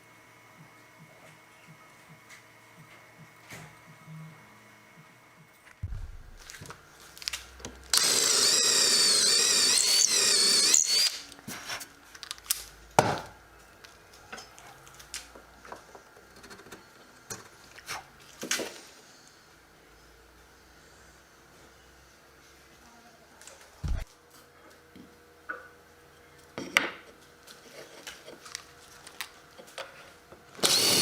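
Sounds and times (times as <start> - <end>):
power drill running: 7.9 - 11.2, 30.6 - 31.0
clicks and knocks of tools and wood: 26.4 - 30.5.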